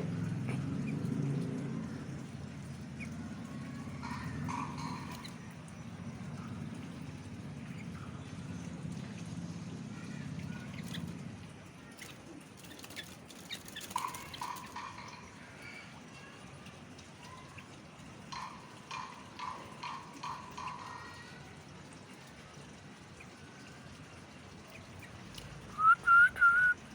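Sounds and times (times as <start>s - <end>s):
bird chirping: 4.0s - 6.4s, 12.0s - 15.3s.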